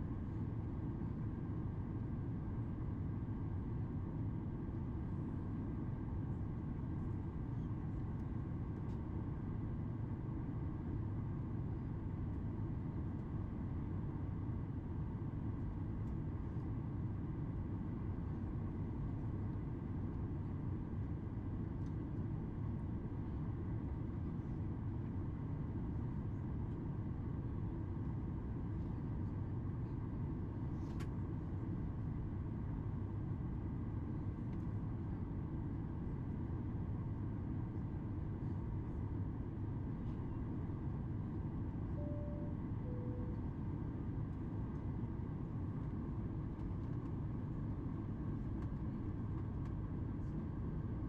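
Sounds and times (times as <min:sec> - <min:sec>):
aircraft cabin engine rumble: 0:00.0 - 0:51.0
faint high whines: 0:41.9 - 0:43.6.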